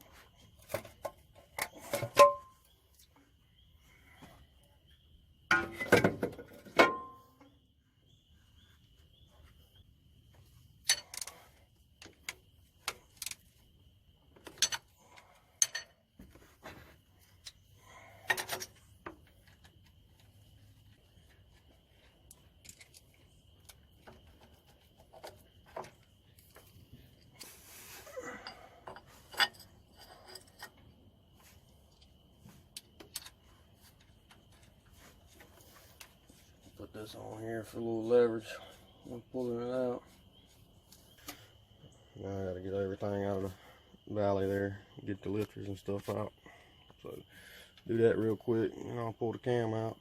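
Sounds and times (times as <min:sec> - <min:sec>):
metal tools clinking on engine parts: 0:00.8 - 0:02.6, 0:10.8 - 0:11.5, 0:14.4 - 0:16.0, 0:28.2 - 0:30.8.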